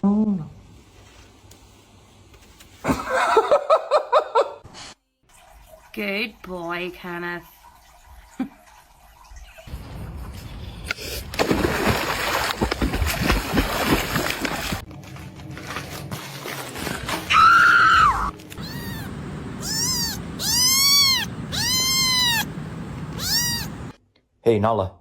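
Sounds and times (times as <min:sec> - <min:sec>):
cat meowing: 0:18.1 - 0:24.0.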